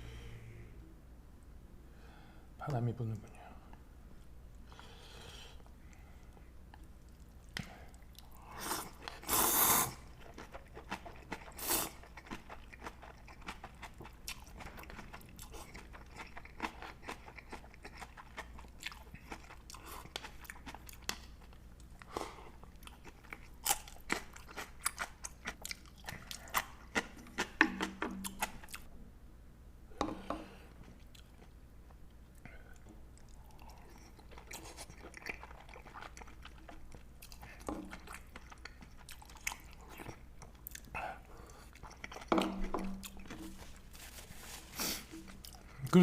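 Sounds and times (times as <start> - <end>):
person chewing and crunching: 6.2 - 28.9, 32.7 - 46.0.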